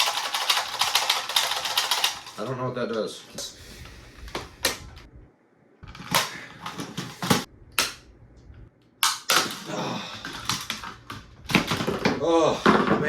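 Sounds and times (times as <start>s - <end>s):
plastic parts clicking and knocking: 9.0s - 13.0s.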